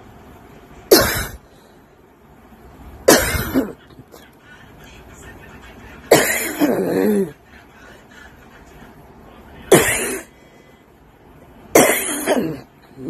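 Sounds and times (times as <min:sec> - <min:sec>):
woman coughing: 0:00.9 - 0:01.4, 0:03.0 - 0:03.8, 0:06.1 - 0:07.3, 0:09.7 - 0:10.3, 0:11.7 - 0:12.7.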